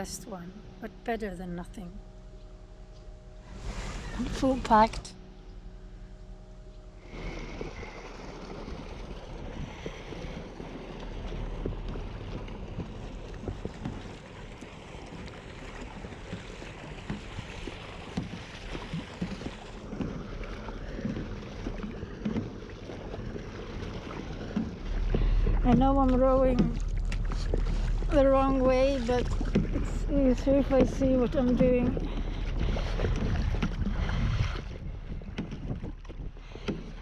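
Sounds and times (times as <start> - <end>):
oars splashing and knocking: 6.7 - 37.0
wind noise on microphone: 25.1 - 37.0.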